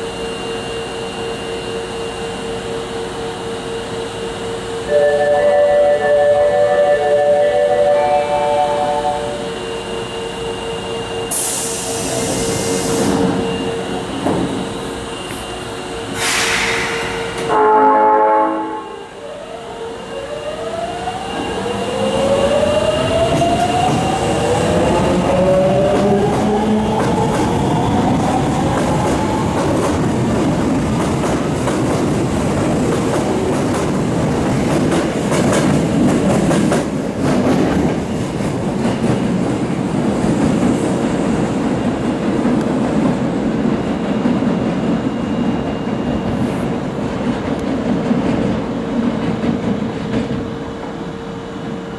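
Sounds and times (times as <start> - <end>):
train motor whine: 0.0 - 29.5
train horn: 4.8 - 9.6, 17.3 - 19.2.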